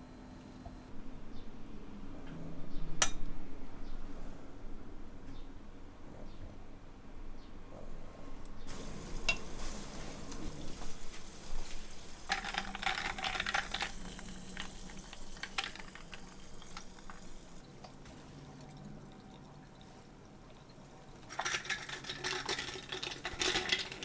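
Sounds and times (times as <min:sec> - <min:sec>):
kitchen items clicking and knocking: 0:08.7 - 0:17.6, 0:21.2 - 0:24.0
water splashing and running: 0:08.7 - 0:20.0.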